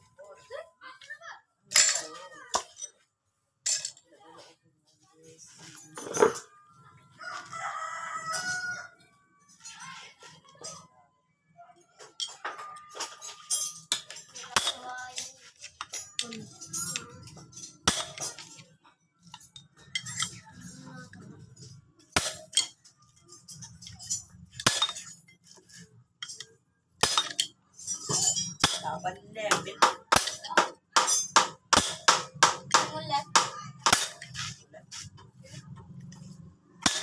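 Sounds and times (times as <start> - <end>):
metallic clinks of tools and parts: 1.7 - 3.0, 3.6 - 4.1, 5.2 - 6.6, 9.5 - 10.9, 11.9 - 35.0, 35.7 - 37.0.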